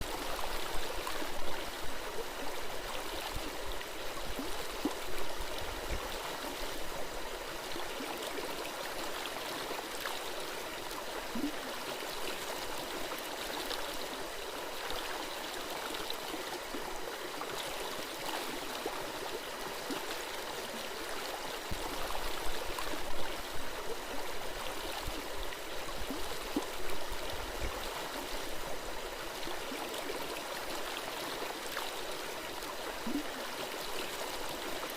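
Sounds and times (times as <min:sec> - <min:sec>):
stream gurgling: 0:00.0 - 0:34.9.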